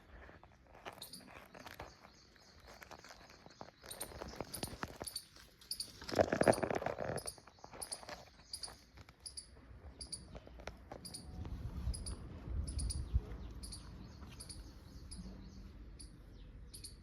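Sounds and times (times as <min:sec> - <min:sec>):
rustling and clicking: 0:00.1 - 0:11.6
small birds chirping: 0:00.1 - 0:17.0.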